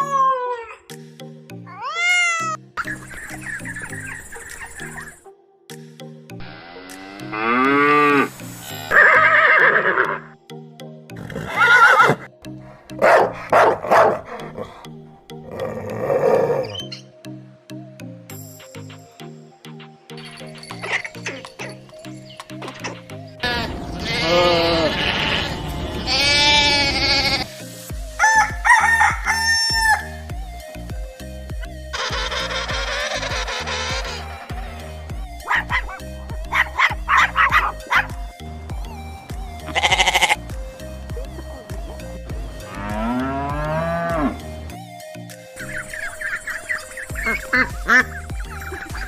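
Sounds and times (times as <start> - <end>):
background music: 0.0 - 49.0
horse neighing: 8.9 - 10.3, 11.2 - 12.3, 23.4 - 27.5, 32.0 - 34.9, 39.6 - 40.4
goat bleating: 23.4 - 27.5, 39.6 - 40.5
rooster crowing: 28.2 - 30.2.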